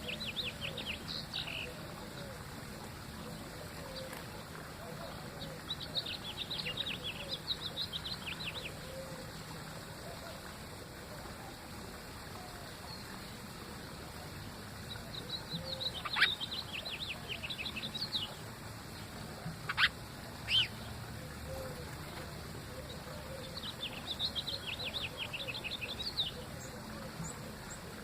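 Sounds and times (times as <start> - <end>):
small bird chirping: 15.5 - 18.4, 19.6 - 20.8.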